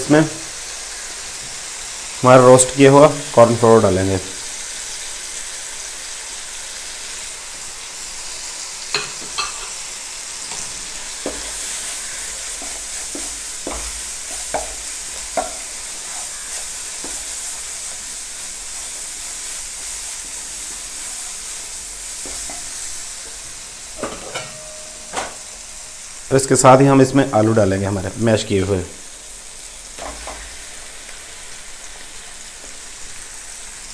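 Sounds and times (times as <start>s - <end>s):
spices sizzling in oil: 0.0s - 33.9s
spoon knocking against pan: 8.9s - 9.7s, 11.2s - 11.6s, 12.6s - 15.8s, 24.0s - 25.5s.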